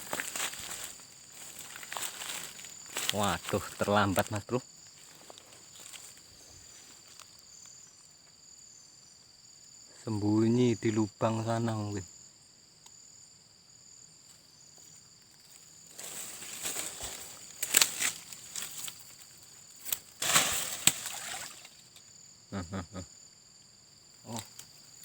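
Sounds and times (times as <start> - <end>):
rustling through grass: 0.0 - 4.2, 4.9 - 7.3, 15.8 - 21.8
crickets trilling: 0.0 - 25.0.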